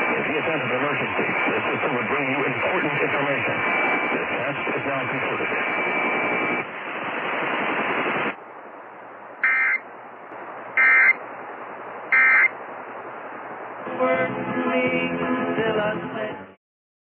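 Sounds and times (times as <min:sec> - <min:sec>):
background hiss: 0:00.0 - 0:16.4
short digital squawks: 0:09.4 - 0:09.8, 0:10.8 - 0:11.2, 0:12.1 - 0:12.5.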